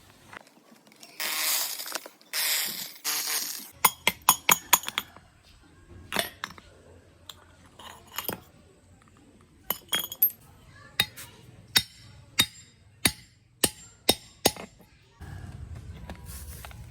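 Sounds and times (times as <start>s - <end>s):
metallic clinks and taps: 9.7s - 10.4s.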